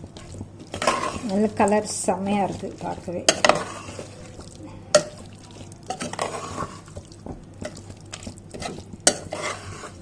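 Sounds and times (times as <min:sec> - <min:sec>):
spoon scraping metal pot: 0:00.7 - 0:01.5, 0:03.2 - 0:04.2, 0:05.9 - 0:07.0, 0:08.5 - 0:10.0.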